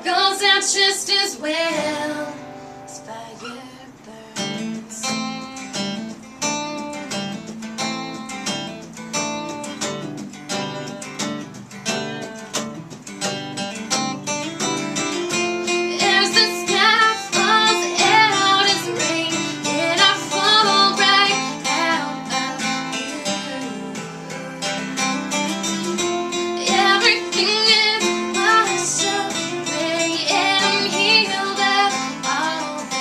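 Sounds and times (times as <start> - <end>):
acoustic guitar strumming: 0.0 - 33.0
person singing wordless melody: 15.8 - 33.0.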